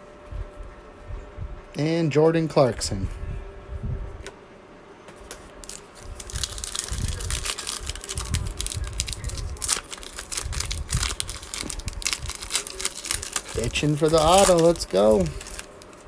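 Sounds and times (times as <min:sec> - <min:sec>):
cards being handled: 0:05.1 - 0:16.0
foil wrapper tearing and crinkling: 0:05.6 - 0:16.0.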